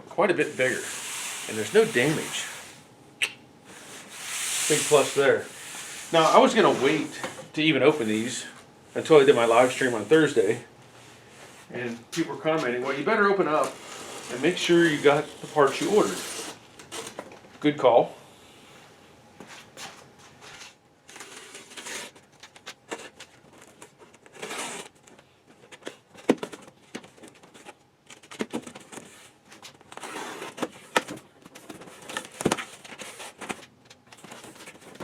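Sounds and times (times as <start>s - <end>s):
paper packing crinkling: 13.4s - 17.2s
packing tape tearing: 13.6s - 17.2s.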